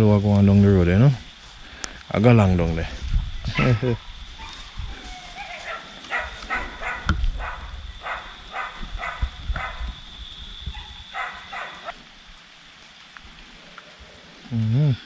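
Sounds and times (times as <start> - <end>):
high insect-like tone: 0.0 - 15.0
dog barking: 5.3 - 10.0, 10.7 - 11.9.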